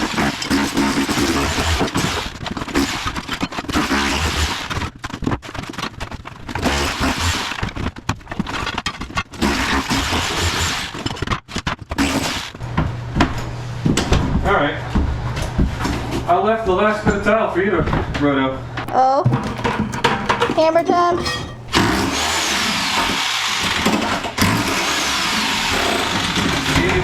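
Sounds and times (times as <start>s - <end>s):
tile cracking and scraping: 18.9s - 22.0s.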